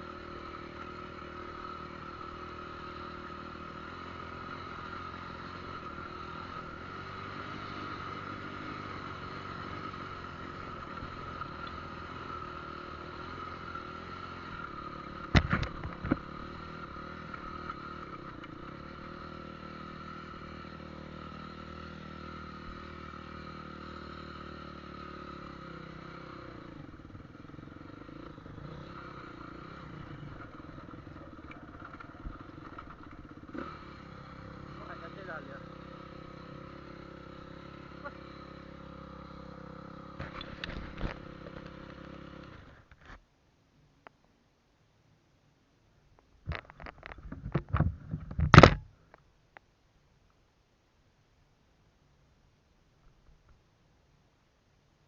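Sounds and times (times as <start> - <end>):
motorcycle engine running: 0.0 - 43.1.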